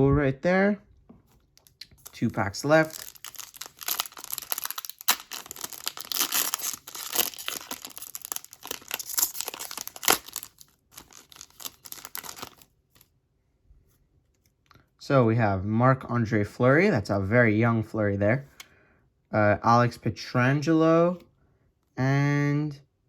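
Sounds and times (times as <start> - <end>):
wrapper ripping and crinkling: 1.6 - 12.7.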